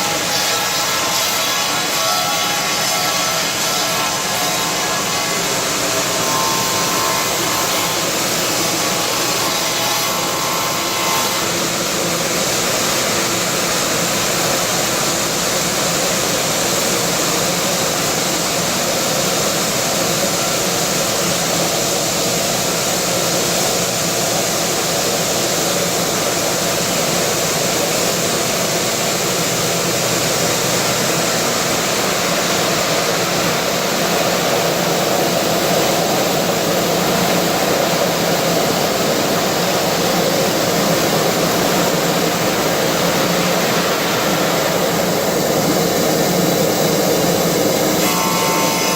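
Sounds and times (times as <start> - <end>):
milling machine grinding stone: 0.0 - 22.2.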